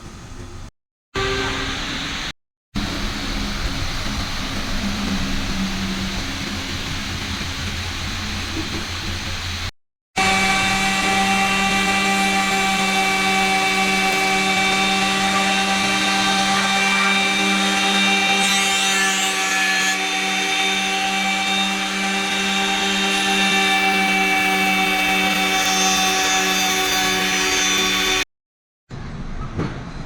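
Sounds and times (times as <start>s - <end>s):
power tool motor whining: 10.2s - 28.2s.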